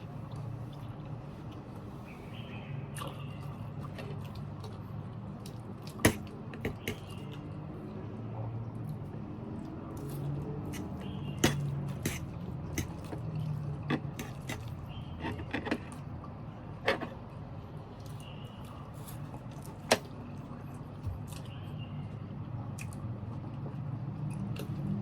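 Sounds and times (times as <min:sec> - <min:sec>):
person chewing: 0:09.6 - 0:14.8.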